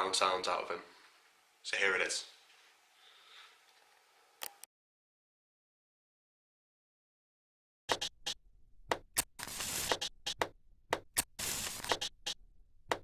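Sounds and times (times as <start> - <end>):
sharp clicks in a beat: 7.9 - 13.0.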